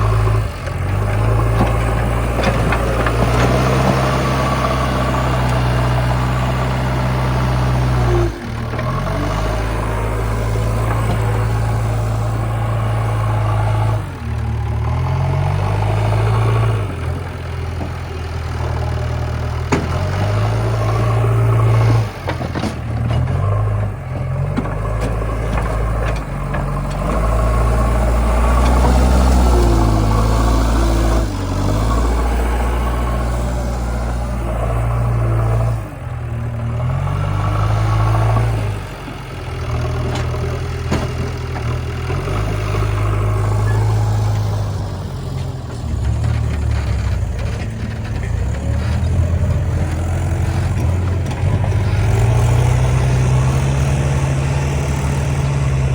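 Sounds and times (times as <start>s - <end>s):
heavy diesel engine running: 0.0s - 55.9s.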